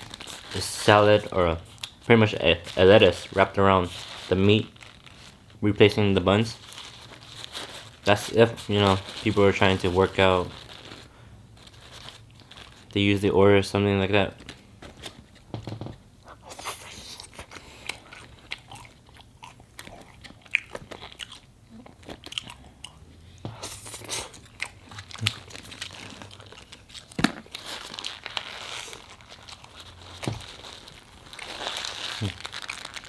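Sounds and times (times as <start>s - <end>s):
person chewing crunchy food: 16.5s - 33.0s.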